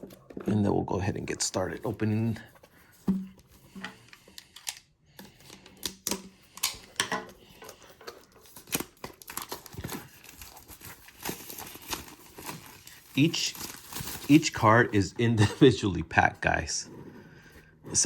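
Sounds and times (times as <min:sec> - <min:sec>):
packaging crinkling: 0:07.6 - 0:15.0.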